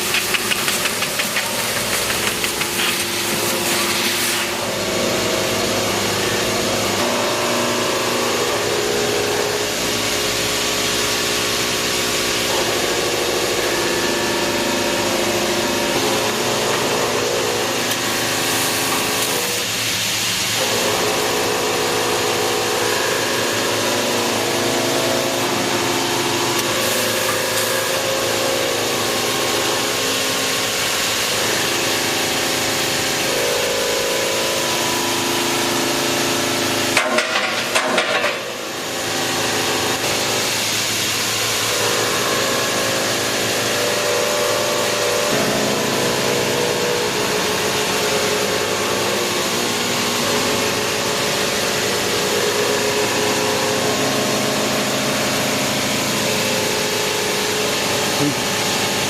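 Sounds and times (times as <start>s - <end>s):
laser cutter hissing: 0.0s - 6.9s, 24.6s - 34.5s.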